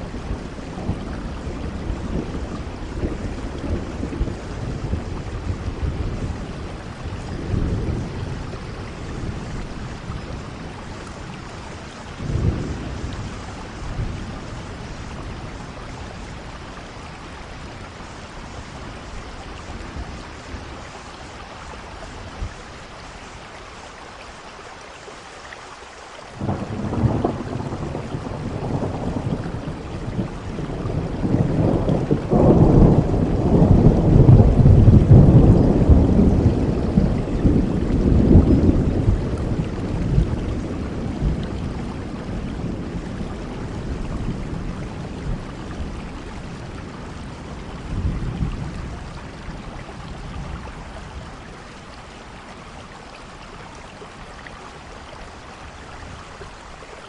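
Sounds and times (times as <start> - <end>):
thunder rumbling: 0.0 - 21.0, 26.4 - 52.7
steady rain: 0.0 - 57.0.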